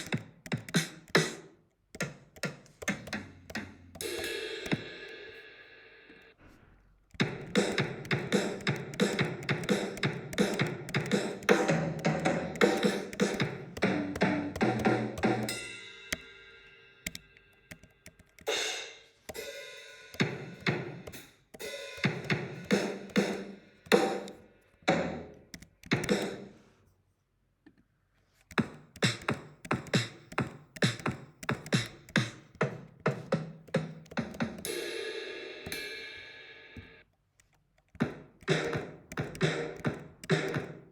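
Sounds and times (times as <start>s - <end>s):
acoustic drum kit playing: 2.4s - 5.6s, 7.2s - 17.2s, 18.5s - 26.5s, 38.0s - 40.8s.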